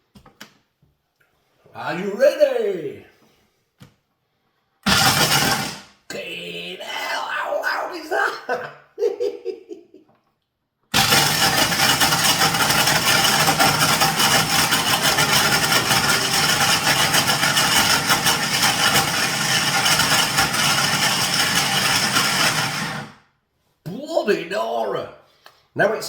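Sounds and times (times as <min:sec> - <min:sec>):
blender motor grinding nuts: 0:04.8 - 0:05.9, 0:10.9 - 0:23.2.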